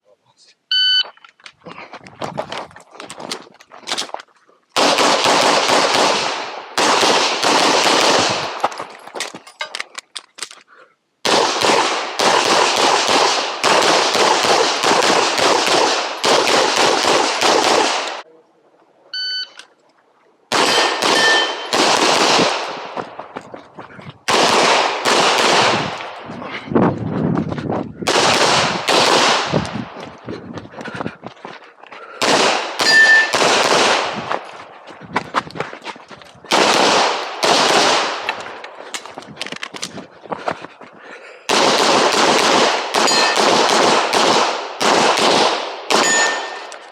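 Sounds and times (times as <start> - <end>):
short ringing tone: 0.7 - 1.2, 19.2 - 19.6, 32.8 - 33.3, 46.0 - 46.7
pistol rapid shots with echo: 4.8 - 8.6, 11.2 - 18.2, 20.5 - 23.0, 24.3 - 26.2, 28.1 - 29.6, 32.2 - 34.2, 36.5 - 38.3, 41.5 - 46.8.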